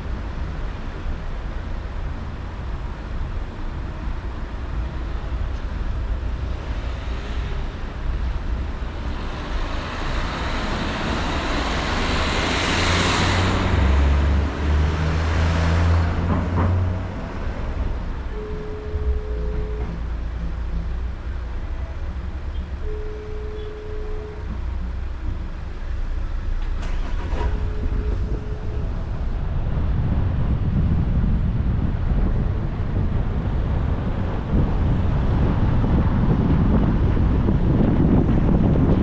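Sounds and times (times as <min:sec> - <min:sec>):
low road rumble: 0:00.0 - 0:39.0
vehicle passing close: 0:09.4 - 0:19.8.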